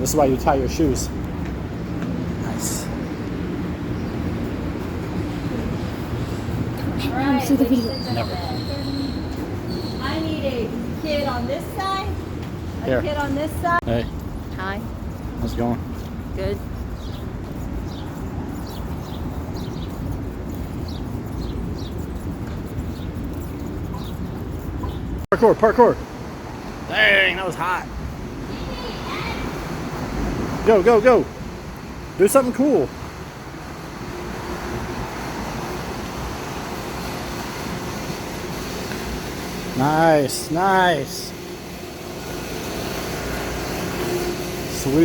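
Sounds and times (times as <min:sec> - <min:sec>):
outdoor background hiss: 0:25.3 - 0:45.0.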